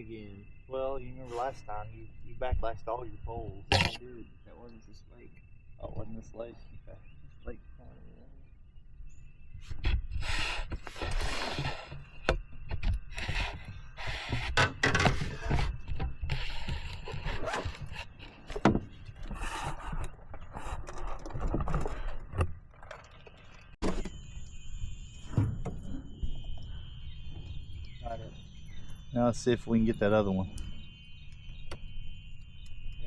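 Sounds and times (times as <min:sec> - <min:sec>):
crickets chirping: 0:00.0 - 0:33.0
gear knocking and scraping in boat: 0:09.8 - 0:28.4.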